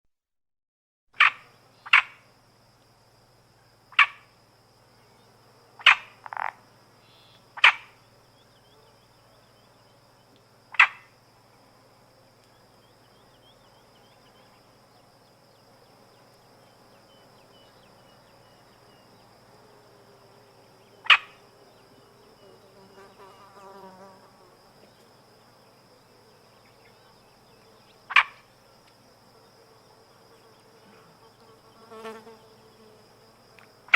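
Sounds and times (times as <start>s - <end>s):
frog croaking: 1.2s - 2.3s, 3.9s - 4.4s, 5.8s - 8.1s, 10.7s - 11.2s, 20.9s - 21.5s, 28.0s - 28.5s.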